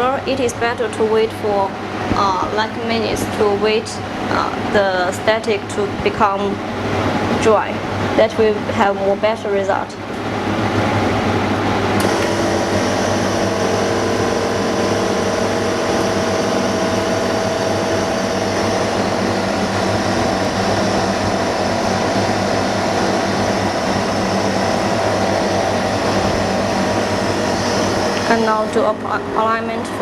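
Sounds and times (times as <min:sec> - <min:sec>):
machine hum and whir: 0:00.0 - 0:30.0.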